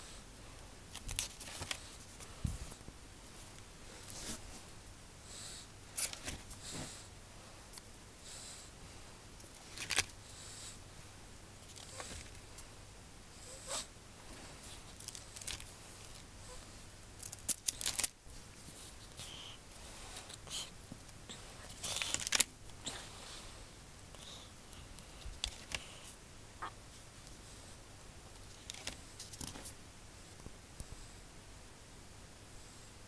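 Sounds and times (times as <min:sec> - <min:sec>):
paper pages rustling: 0:00.9 - 0:04.4, 0:09.5 - 0:10.1, 0:14.6 - 0:16.2, 0:17.2 - 0:20.4, 0:21.6 - 0:22.5, 0:28.5 - 0:29.8.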